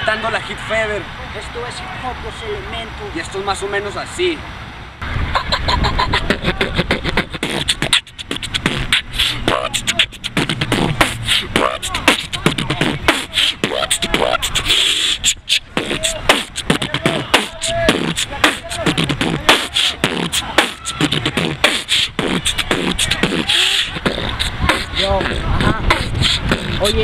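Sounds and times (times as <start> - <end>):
person beatboxing: 5.5 - 27.0
hummed vocal glides: 5.9 - 27.0.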